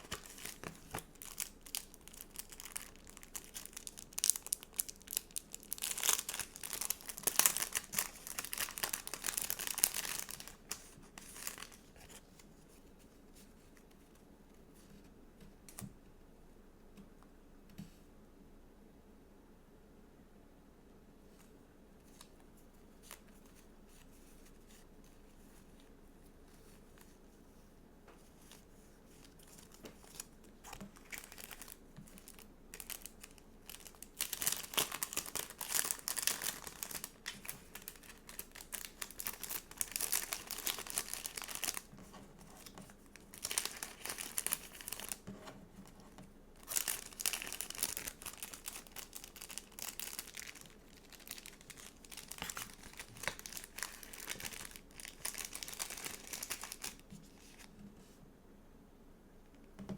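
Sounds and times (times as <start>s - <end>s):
stickers crinkling and peeling: 0.0s - 12.4s, 28.4s - 45.2s, 45.8s - 57.7s.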